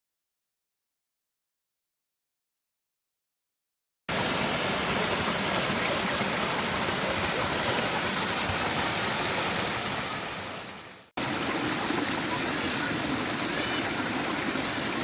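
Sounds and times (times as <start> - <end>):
waterfall rushing: 4.1 - 15.0.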